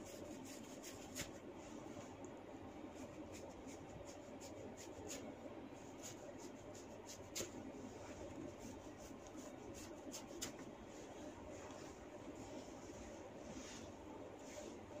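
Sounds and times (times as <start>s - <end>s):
hands rubbing skin: 8.6s - 14.8s.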